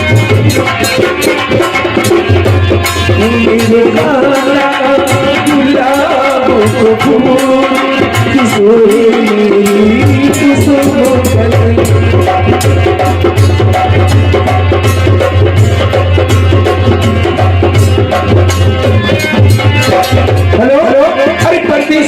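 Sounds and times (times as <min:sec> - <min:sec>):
tabla hand drumming: 0:00.0 - 0:22.0.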